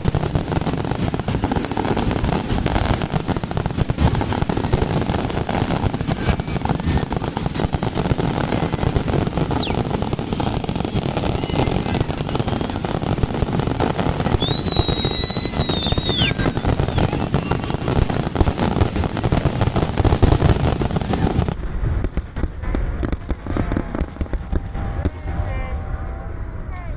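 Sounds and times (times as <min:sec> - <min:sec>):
fireworks crackling and popping: 0:00.0 - 0:25.5
firework whistles dropping in pitch: 0:08.3 - 0:09.8, 0:14.3 - 0:17.7.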